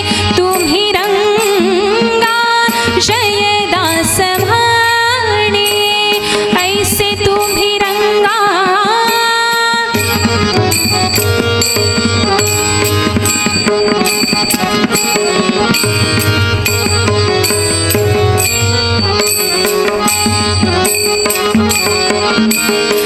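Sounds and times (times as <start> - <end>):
small hand cymbals: 9.0 - 23.0
sustained melody notes: 10.0 - 23.0
drum beat: 10.5 - 23.0.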